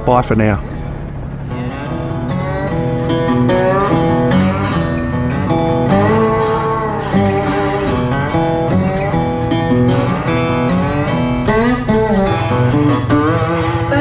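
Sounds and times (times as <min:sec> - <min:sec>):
strummed guitar music: 0:00.0 - 0:14.0.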